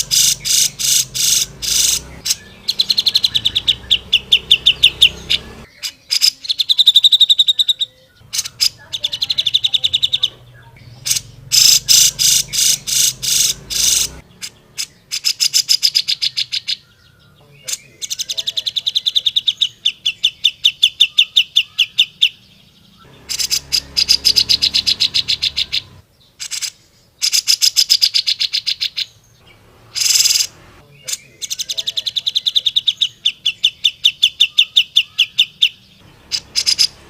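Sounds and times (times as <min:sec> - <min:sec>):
bulbul singing high notes: 0:00.0 - 0:05.7, 0:08.2 - 0:15.0.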